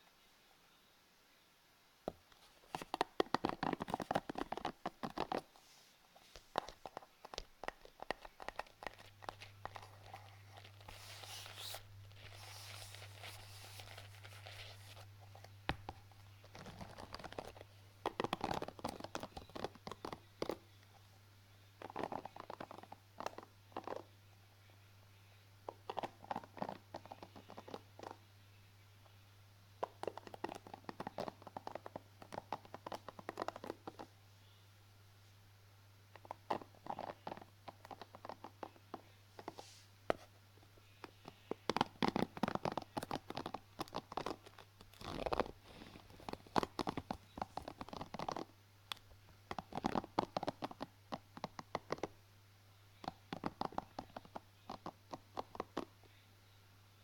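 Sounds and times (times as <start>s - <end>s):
soft rustle: 2.1s - 21.2s, 36.1s - 48.5s
rapid scratching and clicking: 2.3s - 5.6s, 6.2s - 21.0s, 21.8s - 24.1s, 25.7s - 28.2s, 29.8s - 34.1s, 36.2s - 40.3s, 41.0s - 52.1s, 53.0s - 55.9s.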